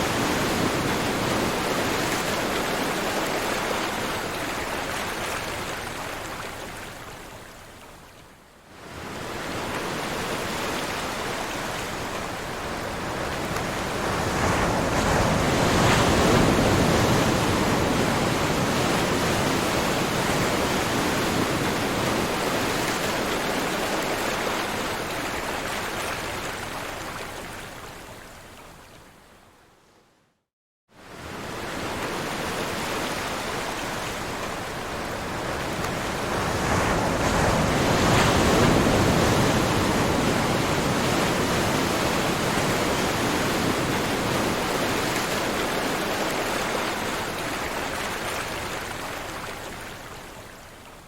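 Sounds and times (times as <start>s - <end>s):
ocean waves washing on shore: 0.0s - 8.1s, 8.7s - 29.1s, 31.0s - 51.0s.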